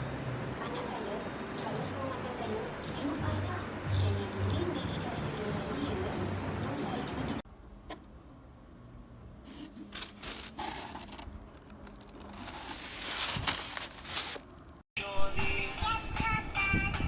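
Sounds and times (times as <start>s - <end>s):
music: 3.2s - 7.4s, 15.0s - 17.0s
objects scraping and rustling: 9.4s - 14.8s.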